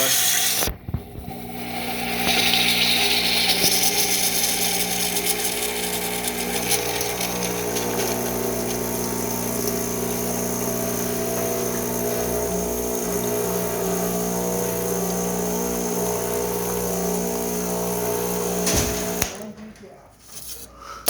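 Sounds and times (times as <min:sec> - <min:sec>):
hiss of spurting water and steam: 0:00.0 - 0:00.7, 0:01.4 - 0:09.1
espresso machine pump humming: 0:00.0 - 0:19.5.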